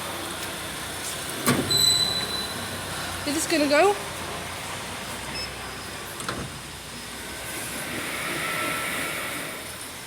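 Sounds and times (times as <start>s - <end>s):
lift machinery whooshing hum: 6.9s - 10.0s.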